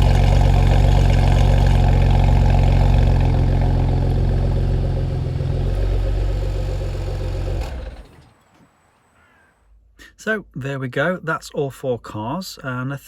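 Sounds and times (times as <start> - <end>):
car engine idling: 0.0 - 8.5.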